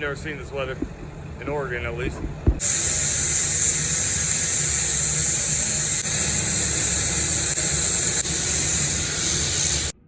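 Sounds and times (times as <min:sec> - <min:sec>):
angle grinder grinding steel: 0:02.6 - 0:10.0.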